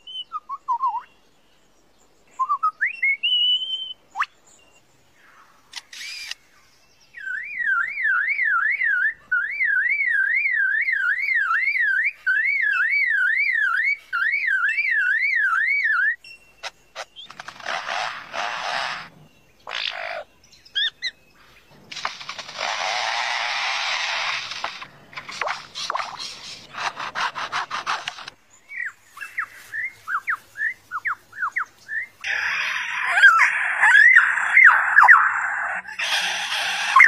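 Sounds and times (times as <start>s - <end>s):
bird whistle warbling: 2.4s - 4.3s, 7.2s - 16.4s, 28.7s - 37.0s
harsh rasping bird bursts: 5.8s - 6.4s, 16.6s - 28.4s, 32.2s - 37.0s.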